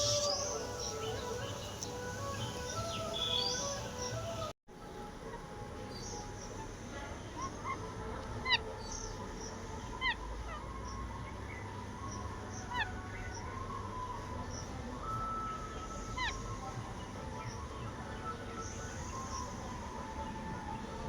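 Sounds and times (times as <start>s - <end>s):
parrot harsh calls: 0.0s - 1.8s
faint bird chirps: 0.0s - 4.5s, 5.8s - 21.0s.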